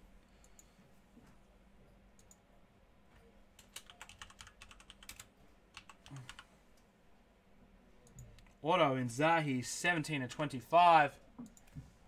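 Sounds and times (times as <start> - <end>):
faint keyboard typing: 2.1 - 2.4, 3.5 - 6.9.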